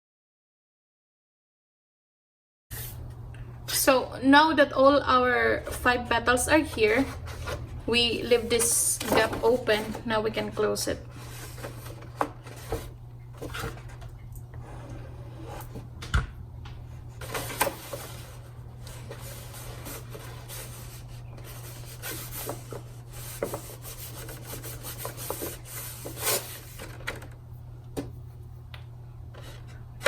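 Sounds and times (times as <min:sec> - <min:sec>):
steady low hum: 0:02.8 - 0:30.0
paper rustling: 0:05.6 - 0:14.3, 0:16.9 - 0:27.4.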